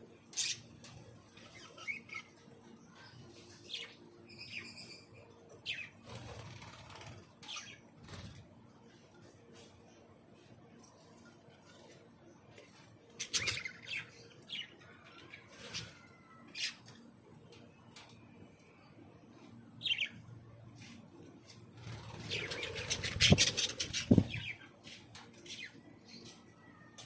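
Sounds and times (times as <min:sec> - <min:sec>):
wings flapping and scuffling: 0:05.9 - 0:08.5, 0:20.8 - 0:26.4
birds chirping: 0:12.6 - 0:21.0, 0:21.8 - 0:26.9.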